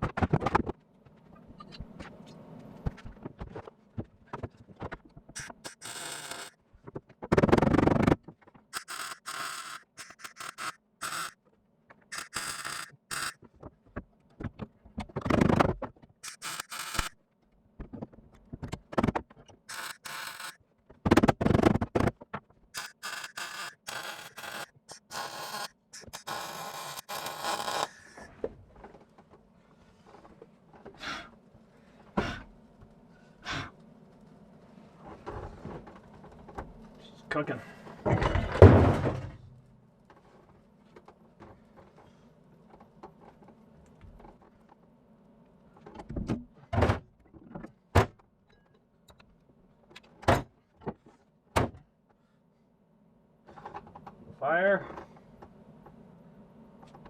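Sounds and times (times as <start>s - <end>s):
crackling welds on sheet metal: 5.4s - 6.6s, 7.3s - 11.4s, 12.1s - 13.4s, 16.2s - 17.2s, 19.7s - 20.6s, 22.8s - 28.3s.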